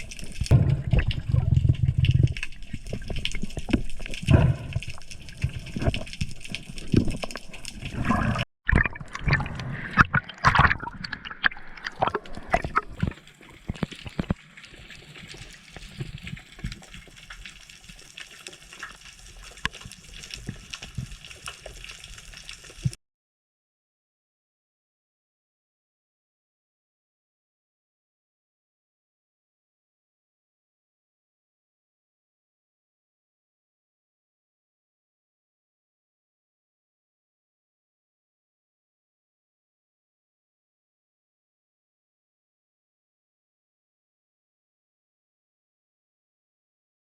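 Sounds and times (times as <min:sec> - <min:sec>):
water sloshing and gurgling: 0:00.0 - 0:23.0.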